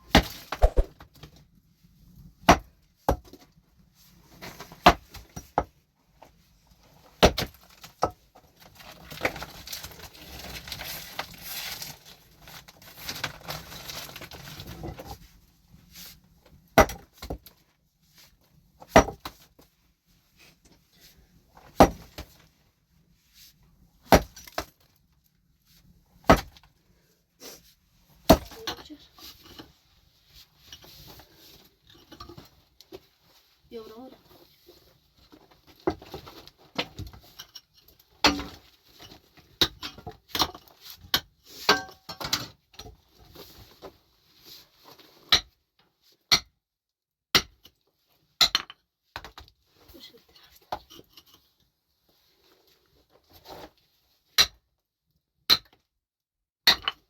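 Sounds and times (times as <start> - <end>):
scraping noise: 0.6 - 1.0.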